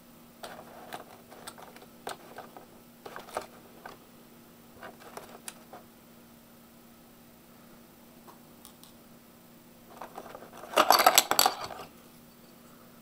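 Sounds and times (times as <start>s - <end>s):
plastic packaging clicks and crinkles: 0.4s - 4.0s, 4.8s - 5.8s.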